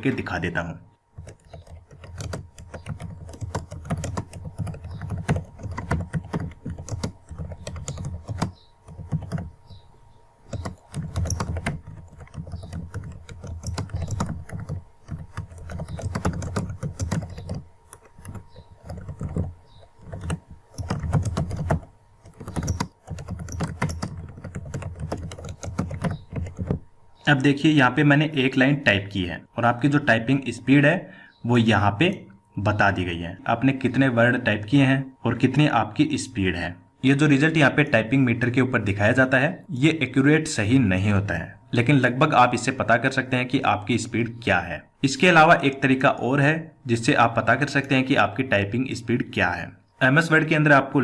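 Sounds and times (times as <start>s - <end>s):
keyboard keys clicking: 1.2s - 9.8s, 10.5s - 26.8s.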